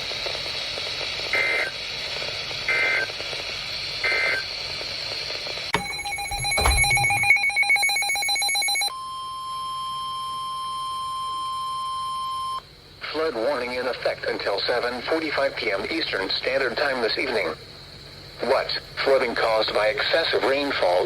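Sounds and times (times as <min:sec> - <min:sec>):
thump: 0:05.8 - 0:07.3
pulsing multi-tone electronic alarm: 0:05.8 - 0:12.6
steady single-pitch alarm tone: 0:05.8 - 0:12.6.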